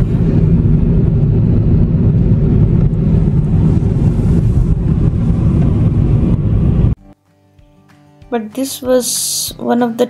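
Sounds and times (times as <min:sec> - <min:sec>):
car engine and tyre rumble: 0:00.0 - 0:07.0.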